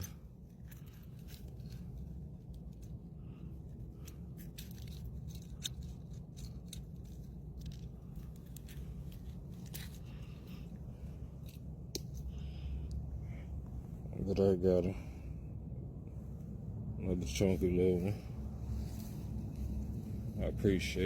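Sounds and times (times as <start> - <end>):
small clicks and scrapes: 0.0 - 13.0
low steady rumble: 0.0 - 21.0.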